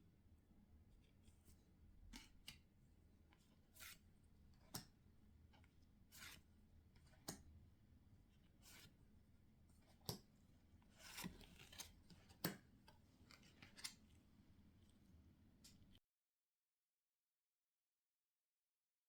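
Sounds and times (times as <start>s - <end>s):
trading cards sliding and clicking: 10.9s - 14.1s.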